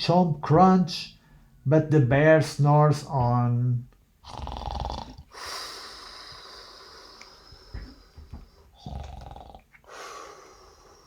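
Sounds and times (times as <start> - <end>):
person imitating snoring: 4.2 - 7.2, 8.8 - 11.0.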